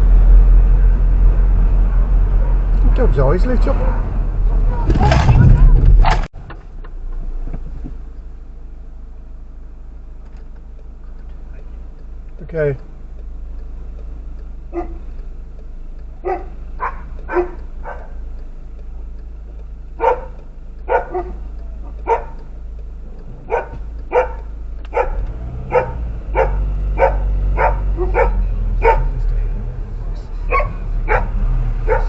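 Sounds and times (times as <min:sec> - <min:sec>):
car engine hum: 0:00.0 - 0:32.0
dog barking: 0:02.4 - 0:02.6, 0:14.7 - 0:15.0, 0:16.2 - 0:18.2, 0:20.0 - 0:21.4, 0:22.0 - 0:22.5, 0:23.5 - 0:29.2, 0:30.5 - 0:32.0.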